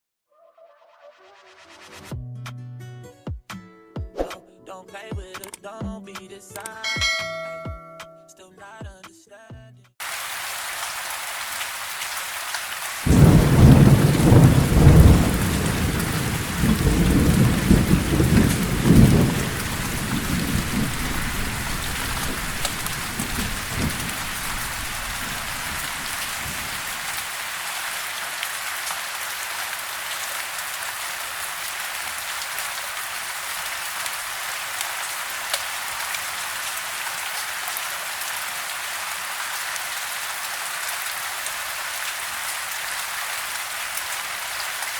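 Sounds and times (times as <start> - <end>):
steady rain falling: 10.0 - 44.9
thunder rolling: 13.1 - 27.1.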